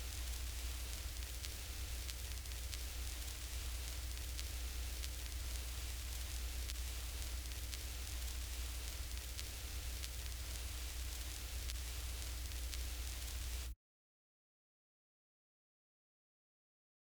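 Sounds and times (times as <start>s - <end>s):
tape hiss: 0.0s - 13.8s
faint ticks: 0.2s - 13.5s.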